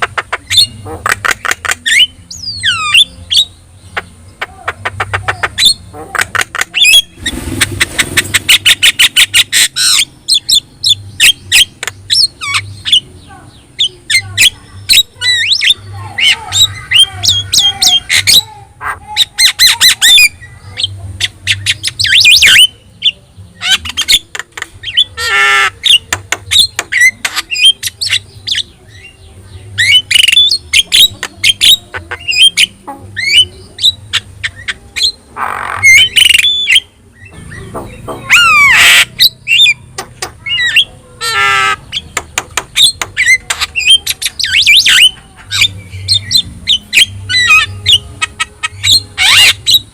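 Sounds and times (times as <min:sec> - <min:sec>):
bird singing clicks and whistles: 0:41.9 - 0:45.1.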